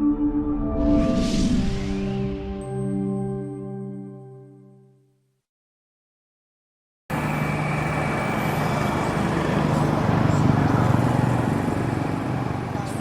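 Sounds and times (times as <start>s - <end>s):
low engine hum: 7.1s - 13.0s.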